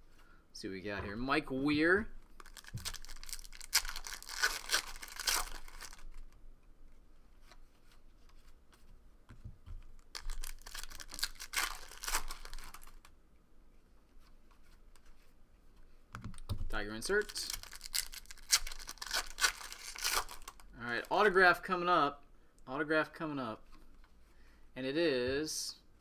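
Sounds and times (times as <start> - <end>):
wrappers tearing and crinkling: 2.4 - 6.2, 10.0 - 13.1, 17.0 - 20.7.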